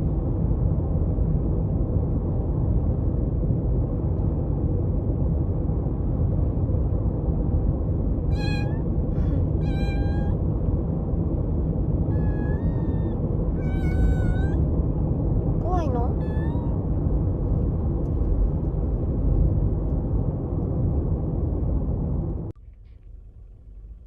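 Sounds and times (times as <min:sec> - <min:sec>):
low rumbling background noise: 0:00.0 - 0:24.0
kitten meowing: 0:08.3 - 0:10.4, 0:12.1 - 0:14.6, 0:16.1 - 0:16.7.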